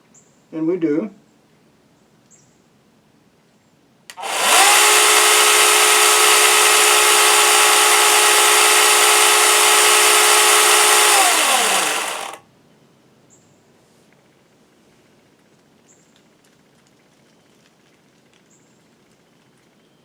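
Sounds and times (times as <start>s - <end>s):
electric chainsaw whine: 4.1s - 12.4s.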